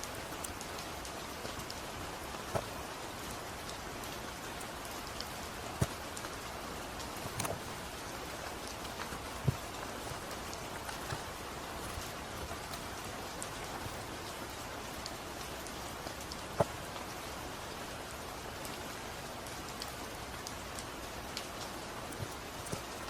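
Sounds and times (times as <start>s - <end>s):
steady rain hiss: 11.3s - 23.0s.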